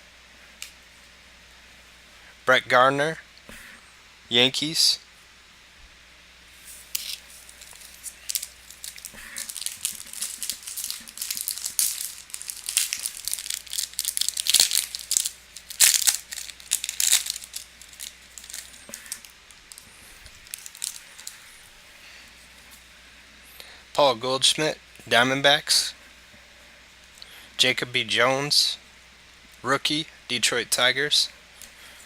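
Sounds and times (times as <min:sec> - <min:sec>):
foil pack tearing and crinkling: 0:06.8 - 0:21.4.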